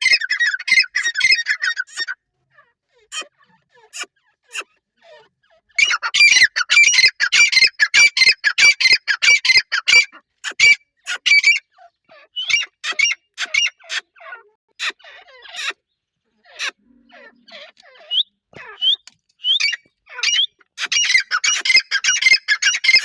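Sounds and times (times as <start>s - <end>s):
francolin shrill calls: 18.0s - 23.0s.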